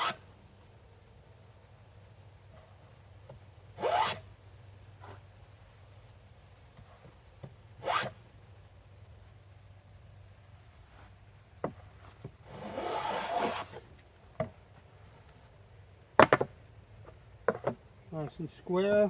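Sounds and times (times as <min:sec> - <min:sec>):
hand plane shaving wood: 0:12.5 - 0:13.8
sharp wooden knocks: 0:16.2 - 0:16.6.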